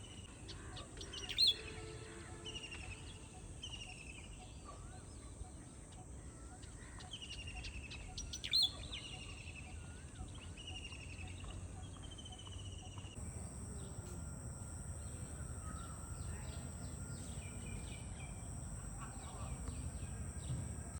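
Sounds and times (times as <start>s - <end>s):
birds chirping: 13.2s - 20.9s
thin steady high tone: 13.2s - 20.9s.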